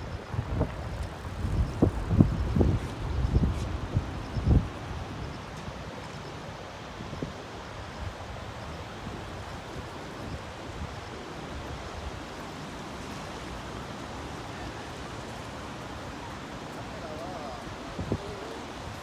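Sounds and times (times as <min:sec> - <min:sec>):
wind buffeting microphone: 0:00.0 - 0:05.6, 0:06.9 - 0:19.0
river rushing: 0:06.0 - 0:19.0.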